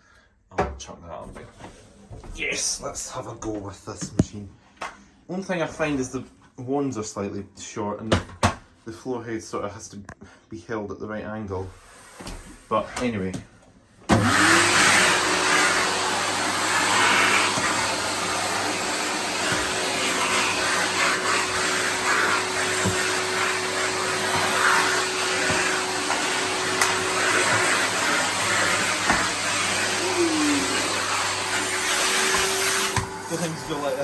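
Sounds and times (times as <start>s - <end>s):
vacuum cleaner running: 11.6s - 13.2s, 14.1s - 34.0s.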